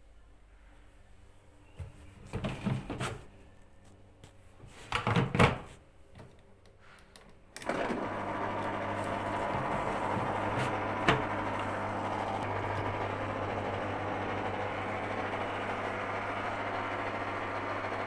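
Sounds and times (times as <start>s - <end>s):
washing machine whooshing hum: 7.6s - 18.0s.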